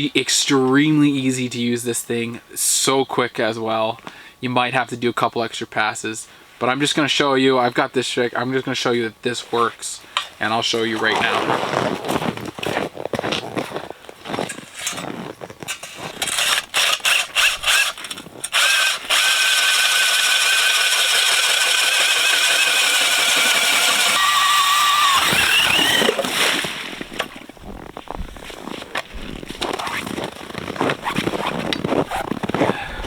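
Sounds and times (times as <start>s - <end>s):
power drill auger grinding ice: 15.0s - 27.9s, 29.4s - 33.0s
knocks and scrapes: 25.3s - 33.0s.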